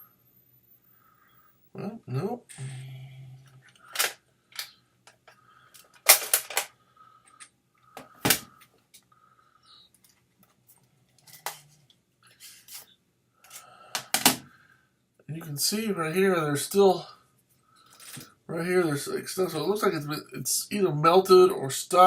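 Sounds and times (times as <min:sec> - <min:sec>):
faint high whine: 0:00.0 - 0:10.0.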